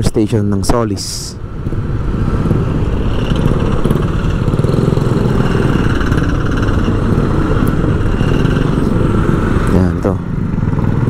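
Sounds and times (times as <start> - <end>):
small motorcycle engine running: 1.4 - 11.0.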